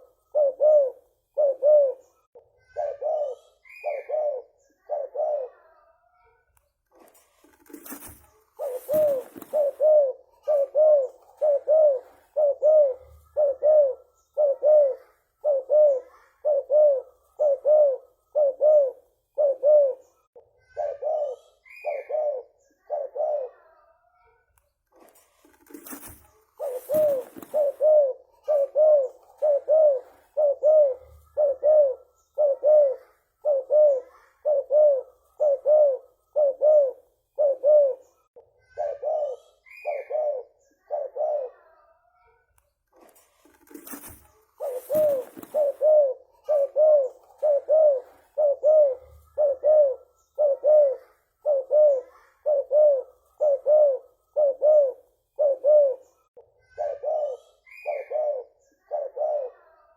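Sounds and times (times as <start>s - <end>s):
dove cooing: 0.0s - 5.9s, 7.1s - 23.8s, 25.4s - 41.9s, 43.6s - 59.9s
brief rustle: 6.9s - 9.8s, 24.9s - 27.8s, 42.9s - 45.8s.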